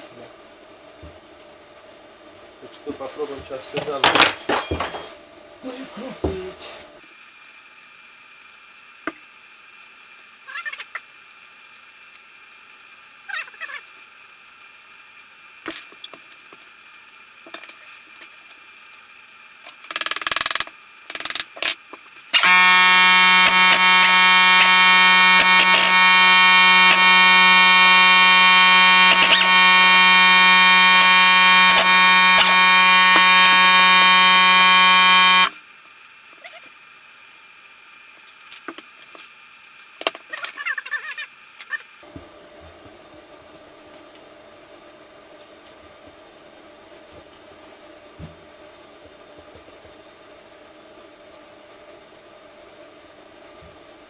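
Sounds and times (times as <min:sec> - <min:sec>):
clinks and knocks on metal: 0:03.8 - 0:05.2
loud steady buzz: 0:22.4 - 0:35.6.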